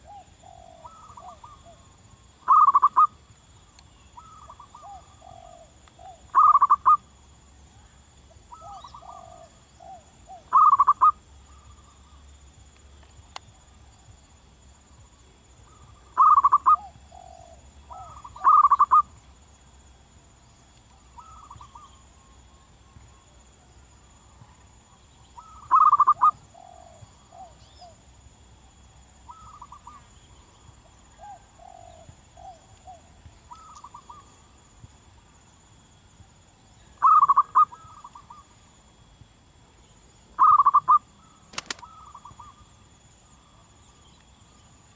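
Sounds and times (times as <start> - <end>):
dove cooing: 0.0 - 1.8, 2.5 - 3.1, 4.2 - 7.0, 8.5 - 11.7, 15.7 - 19.1, 25.4 - 28.0, 31.2 - 34.3, 37.0 - 38.4, 40.4 - 41.0, 41.6 - 42.6.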